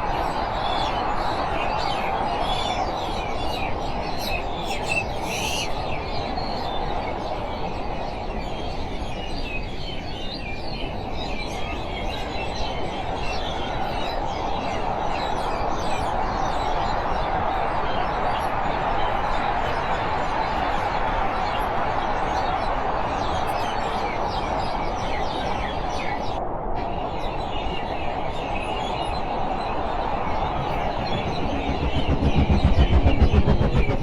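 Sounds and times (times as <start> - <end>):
steady rushing noise: 29.0 - 34.0.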